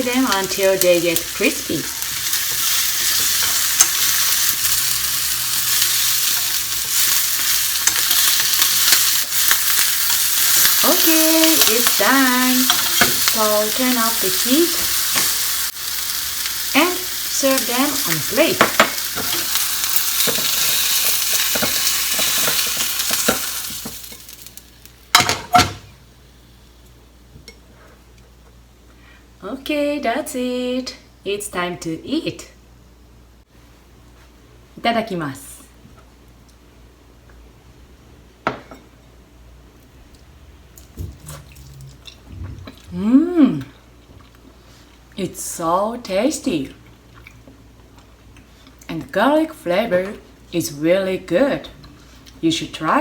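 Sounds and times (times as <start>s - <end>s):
chicken sizzling in hot oil: 0.0s - 25.6s
light crackles of frying: 0.0s - 31.5s, 38.8s - 53.0s.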